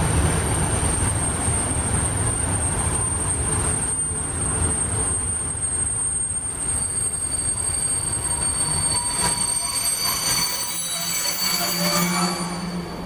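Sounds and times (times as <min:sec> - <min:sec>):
train rumbling by: 0:00.0 - 0:13.0
lower squealing tone: 0:05.5 - 0:13.0
high-pitched squeal: 0:05.7 - 0:13.0.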